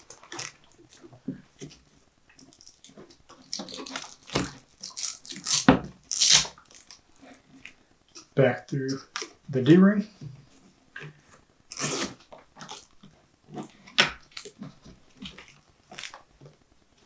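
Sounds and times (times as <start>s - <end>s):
hook-and-loop strap ripping: 2.6s - 7.4s.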